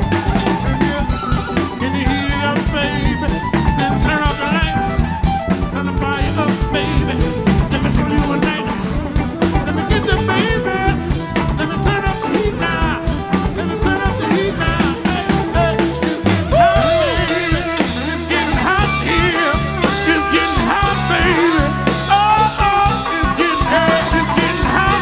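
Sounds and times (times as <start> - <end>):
live band playing upbeat song: 0.0 - 25.0
lead melody bending in pitch: 0.4 - 19.7.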